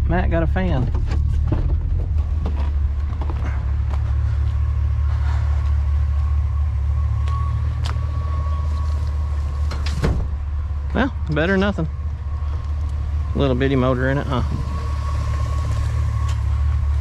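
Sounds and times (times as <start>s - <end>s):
vehicle engine droning: 0.0s - 17.0s
thin steady whine: 3.9s - 17.0s.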